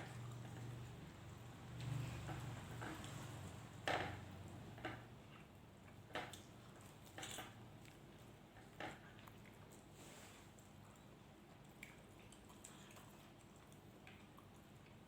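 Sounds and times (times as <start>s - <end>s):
faint low hum: 0.0s - 15.0s
eating clicks and smacks: 10.6s - 15.0s.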